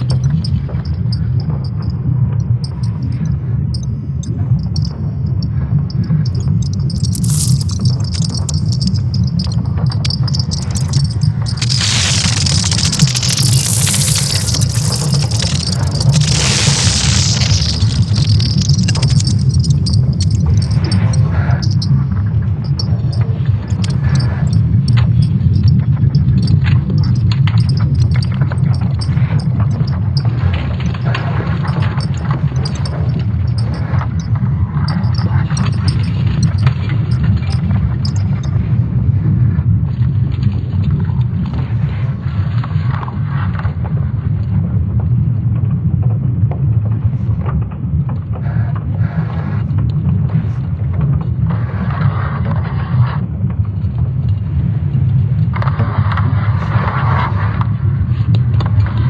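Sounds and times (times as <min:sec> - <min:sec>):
low rumble: 0:00.0 - 0:40.7.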